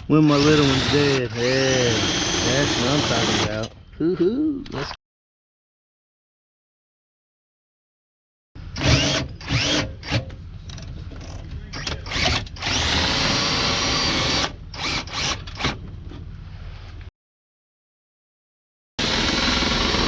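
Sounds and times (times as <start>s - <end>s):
cordless drill running: 0.3s - 3.6s, 8.8s - 9.9s, 12.1s - 15.7s, 19.0s - 20.0s.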